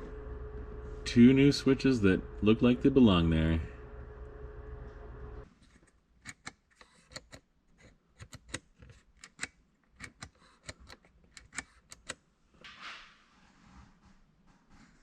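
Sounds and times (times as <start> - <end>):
steady hum: 0.0 - 5.5.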